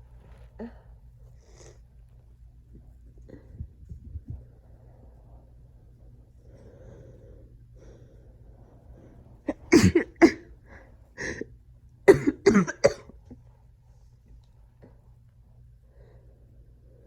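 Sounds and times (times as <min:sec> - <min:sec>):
woman coughing: 0:09.5 - 0:10.5, 0:12.1 - 0:13.4.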